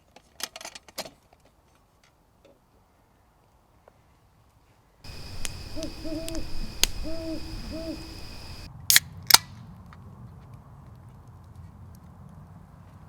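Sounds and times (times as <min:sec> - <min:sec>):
owl hooting: 0:05.1 - 0:08.7
sharp cracks: 0:05.1 - 0:08.7.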